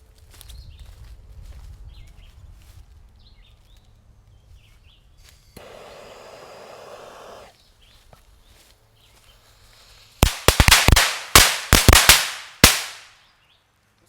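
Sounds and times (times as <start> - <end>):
fuse hissing: 5.5 - 7.5.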